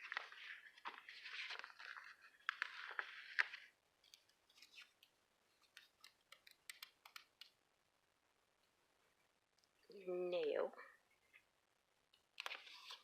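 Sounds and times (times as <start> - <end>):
paper crinkling rustle: 0.0 - 6.8.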